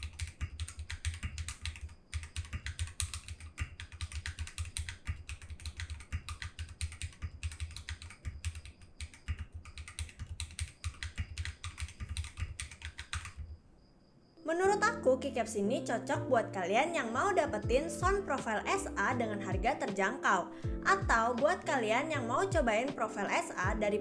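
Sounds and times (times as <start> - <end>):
fast mechanical keyboard typing: 0.0 - 13.4.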